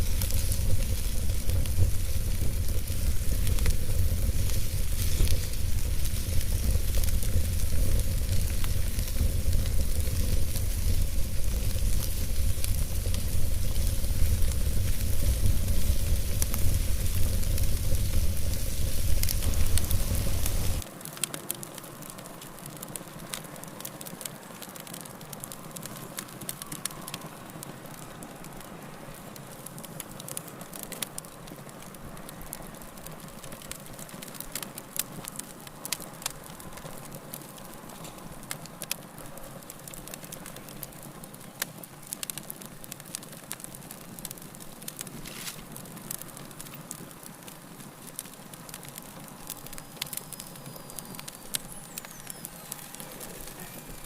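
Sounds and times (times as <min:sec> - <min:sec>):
loud rumbling noise: 0:00.0 - 0:20.8
wood fire crackling and popping: 0:00.0 - 0:54.0.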